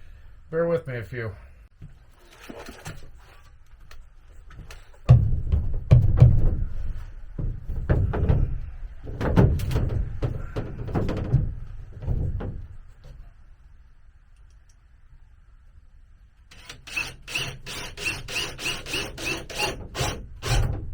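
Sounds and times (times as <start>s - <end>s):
heavy thumps and knocks: 5.0s - 13.2s.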